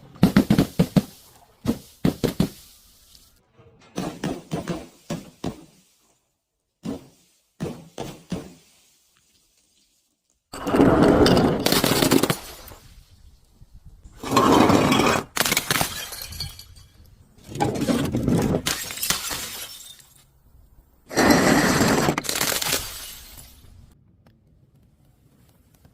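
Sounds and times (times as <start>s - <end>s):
glass shattering: 14.9s - 17.2s, 18.5s - 20.3s, 22.1s - 23.7s.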